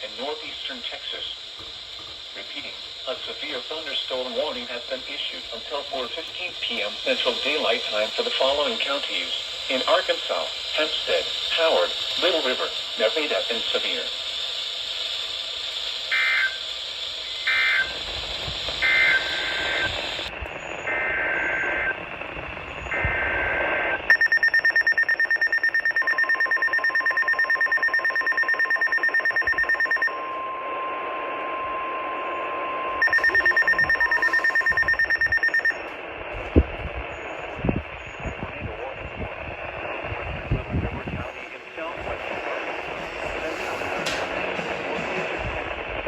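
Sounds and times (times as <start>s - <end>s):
pulsing electronic alert beep: 24.1s - 30.2s, 33.0s - 35.8s
two-tone warbling data bursts: 24.1s - 30.2s, 33.0s - 35.9s
long steady alert tone: 24.1s - 30.7s, 32.9s - 36.0s.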